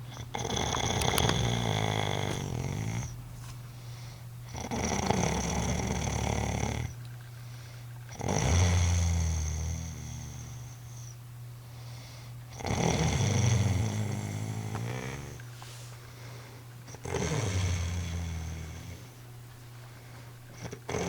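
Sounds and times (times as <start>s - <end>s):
woman snoring: 0.0s - 3.1s, 4.5s - 7.0s, 12.6s - 15.4s, 16.9s - 19.1s, 20.6s - 21.0s.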